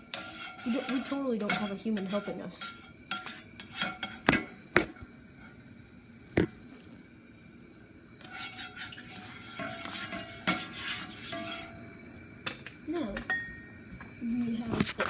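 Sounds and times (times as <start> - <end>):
spoon knocking and scraping in pan: 0.0 - 5.6, 6.4 - 6.6, 8.2 - 14.2.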